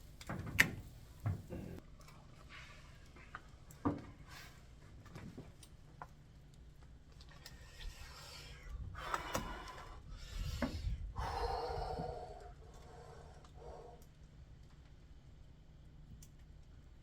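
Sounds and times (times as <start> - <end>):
breathy wordless voice sounds: 7.5 - 14.0.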